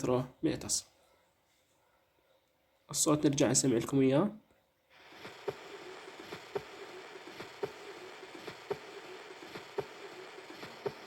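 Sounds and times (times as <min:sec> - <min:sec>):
continuous heart murmur: 0:05.1 - 0:11.0.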